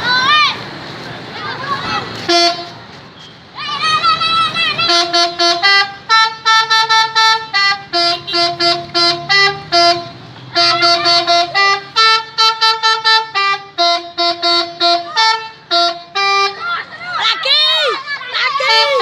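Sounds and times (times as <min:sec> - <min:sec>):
trumpet horns tooting a tune: 0:02.2 - 0:02.8, 0:03.8 - 0:19.0.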